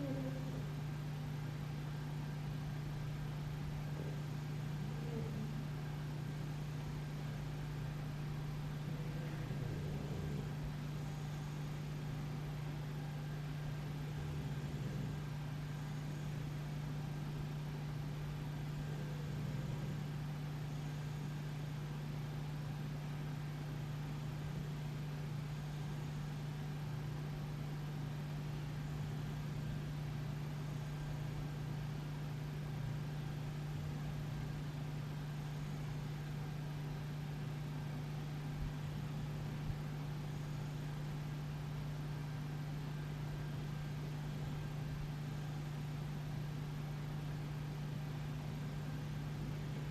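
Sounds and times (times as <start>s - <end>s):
electrical hum with faint hiss: 0.0s - 49.9s.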